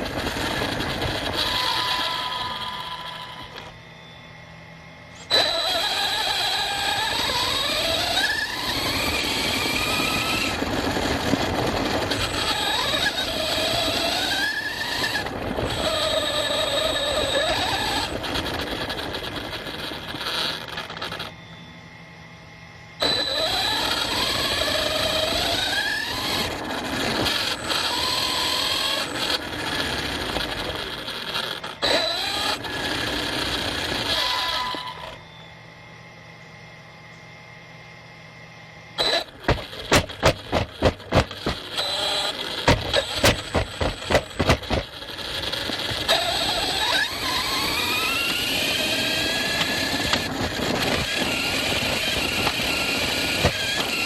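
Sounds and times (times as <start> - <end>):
rc car motor whining: 0.0 - 54.0
sharp knocks: 39.4 - 41.7, 42.7 - 44.9.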